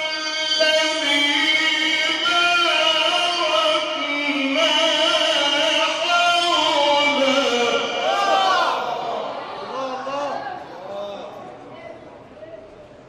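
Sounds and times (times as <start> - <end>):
man chanting melodically: 0.0 - 10.2.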